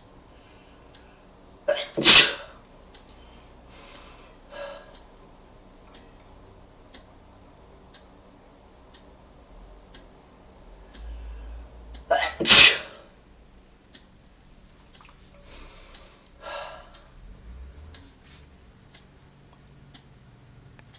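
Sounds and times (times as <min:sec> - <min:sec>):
person sneezing: 0:01.7 - 0:02.5, 0:12.1 - 0:13.0
short breaths: 0:03.1 - 0:05.0, 0:10.8 - 0:11.9, 0:15.3 - 0:18.5.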